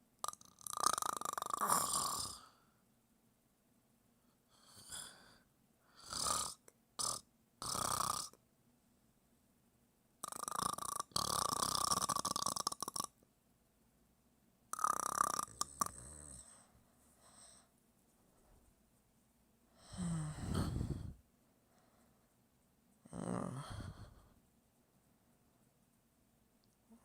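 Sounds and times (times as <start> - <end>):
person snoring: 0.2 - 2.6, 4.5 - 5.4, 6.0 - 8.4, 10.2 - 13.1, 14.7 - 16.7, 19.8 - 21.2, 23.0 - 24.4.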